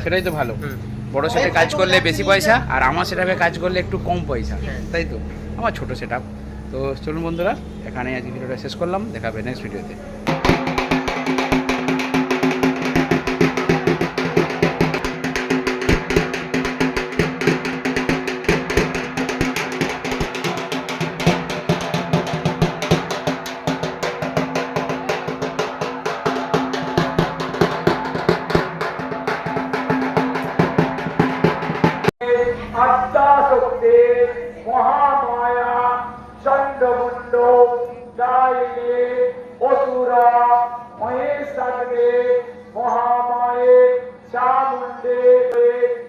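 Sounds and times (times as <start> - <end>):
fast dense drumming: 10.2 - 32.1.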